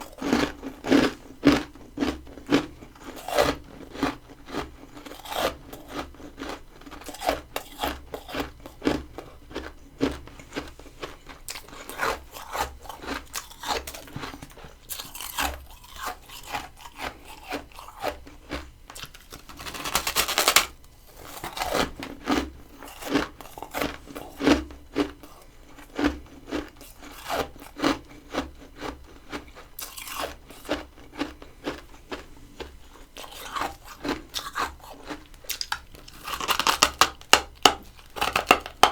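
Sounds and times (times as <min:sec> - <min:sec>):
frost being chewed: 0:00.0 - 0:38.9.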